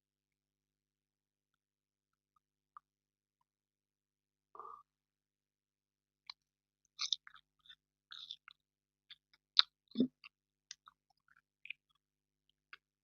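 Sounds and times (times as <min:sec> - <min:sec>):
wet chewing mouth clicks: 0:07.0 - 0:11.0.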